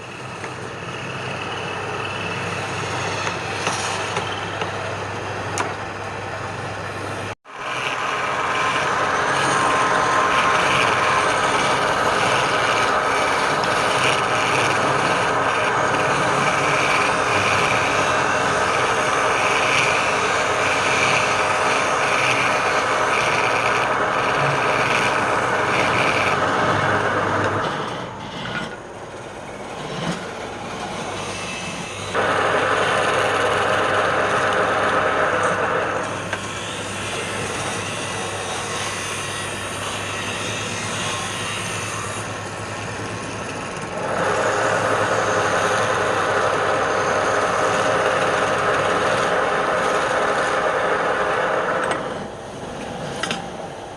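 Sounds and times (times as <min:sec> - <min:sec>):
woodworking power tool humming: 0:05.4 - 0:28.8, 0:29.6 - 0:53.7.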